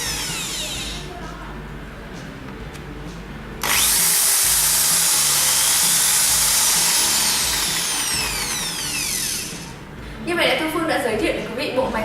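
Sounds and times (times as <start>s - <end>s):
hammer drill whining: 0.0s - 1.0s, 3.6s - 9.8s.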